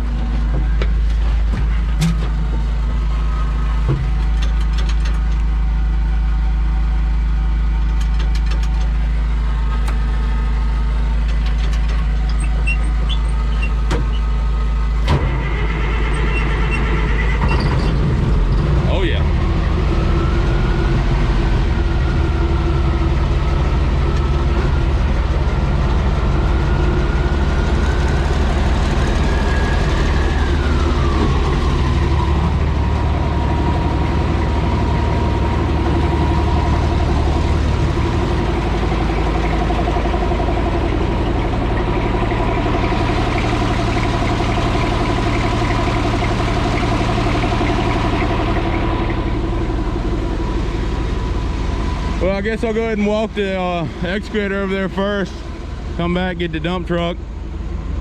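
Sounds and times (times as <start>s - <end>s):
diesel engine idling: 0.0s - 58.0s
whining tone: 15.0s - 56.1s.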